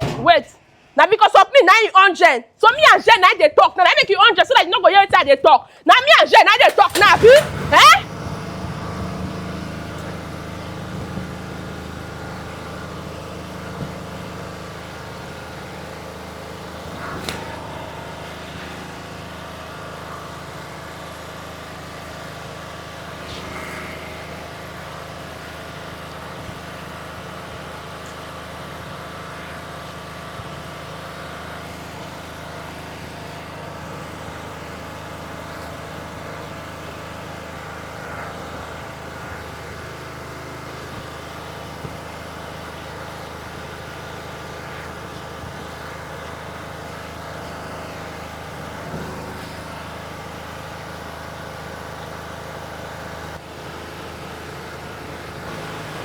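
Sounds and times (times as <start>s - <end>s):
engine humming: 0.0s - 56.0s.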